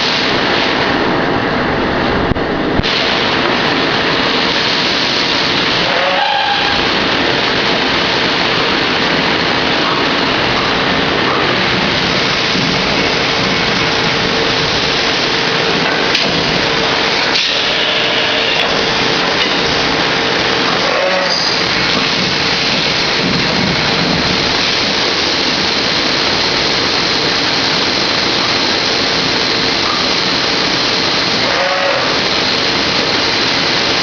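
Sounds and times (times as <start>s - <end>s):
machine tool running: 10.4s - 34.0s.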